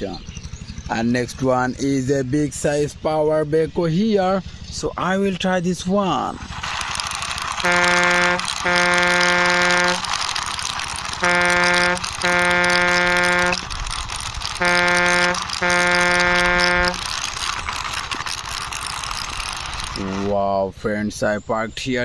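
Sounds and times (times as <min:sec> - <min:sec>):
electronic horn beeps: 0:07.6 - 0:10.2, 0:11.0 - 0:13.7, 0:14.6 - 0:17.2.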